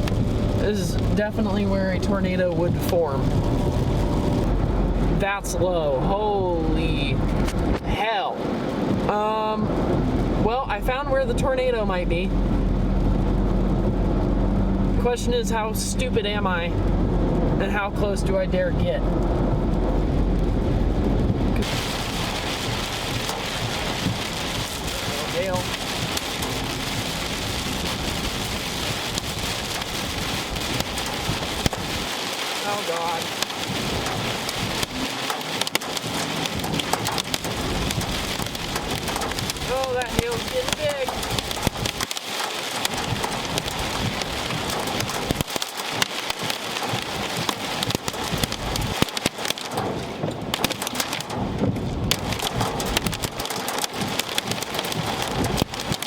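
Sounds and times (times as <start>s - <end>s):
hail and heavy rain on vehicle: 0.0s - 56.0s.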